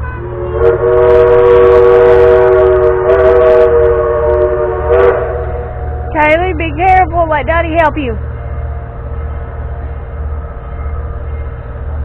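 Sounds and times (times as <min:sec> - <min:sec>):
locomotive whistle chord: 0:00.0 - 0:06.8.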